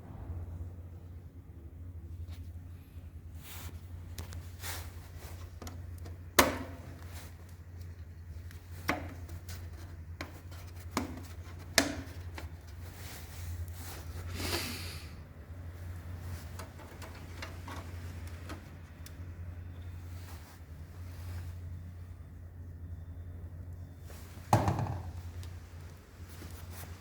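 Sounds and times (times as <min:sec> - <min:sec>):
steady low hum: 0:00.0 - 0:27.0
hard parts knocking and clicking: 0:16.4 - 0:18.7, 0:24.5 - 0:25.2.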